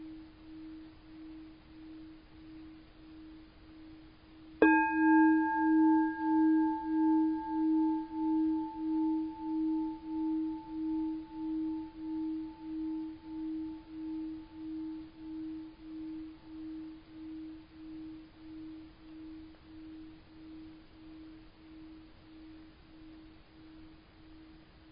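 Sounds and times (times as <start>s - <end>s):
bowl bell ringing: 4.6s - 22.5s.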